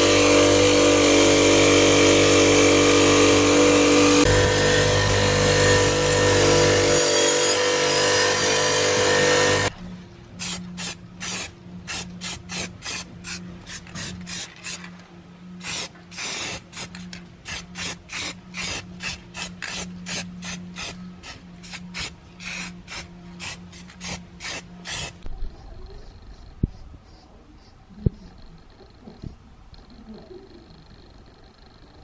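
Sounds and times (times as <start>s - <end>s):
abrasive filing strokes: 10.4s - 14.8s, 15.6s - 25.2s.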